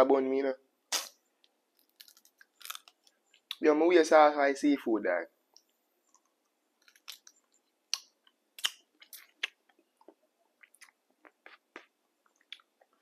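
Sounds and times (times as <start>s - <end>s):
person chewing crab cracking: 1.8s - 3.6s, 6.1s - 13.0s.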